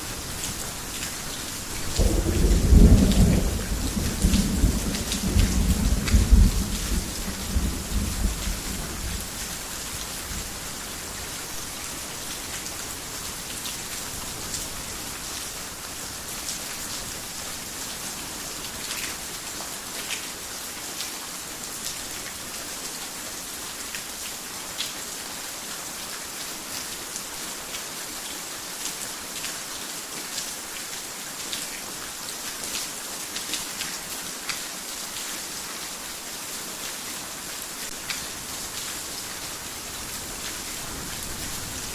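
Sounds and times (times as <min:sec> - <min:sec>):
heavy rain on a roof: 0:00.0 - 0:41.9
low thunder rumble: 0:01.9 - 0:09.3.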